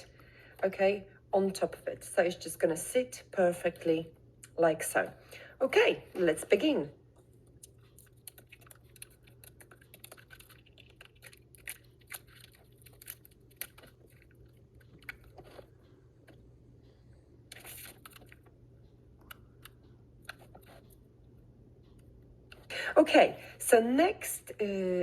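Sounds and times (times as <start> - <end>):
paper clicks and crackles: 7.4 - 15.7, 17.5 - 18.5.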